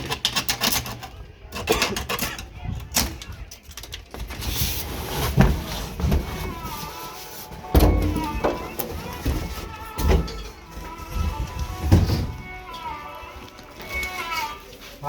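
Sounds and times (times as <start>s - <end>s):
packaging crackling and clicking: 7.7s - 15.0s.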